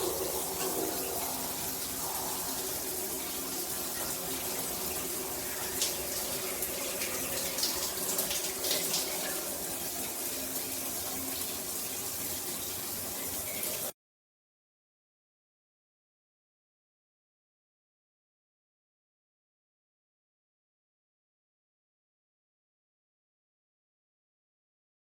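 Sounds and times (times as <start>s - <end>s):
water splashes: 0.0s - 12.0s
shower head water streaming: 0.0s - 13.9s.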